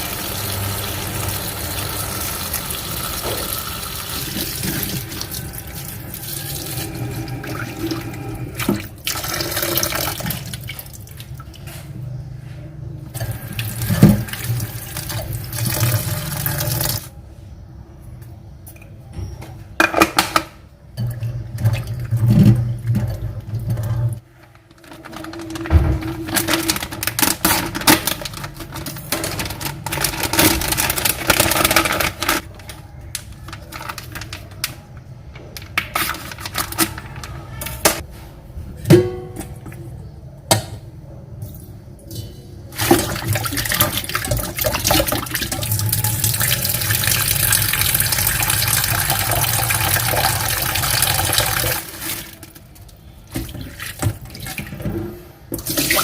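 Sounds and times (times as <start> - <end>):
tap running water into sink: 0.0 - 5.4
utensils clattering: 24.6 - 32.7.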